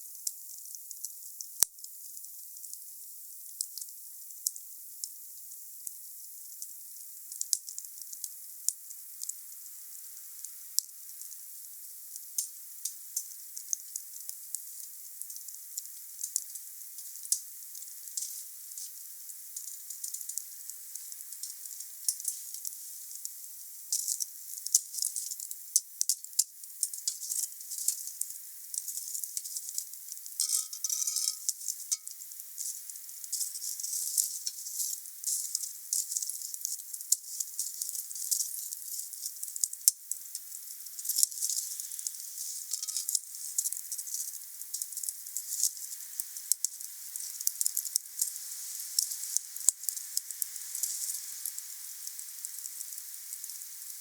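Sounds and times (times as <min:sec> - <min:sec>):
wood fire crackling: 0:17.0 - 0:23.2, 0:23.9 - 0:54.0.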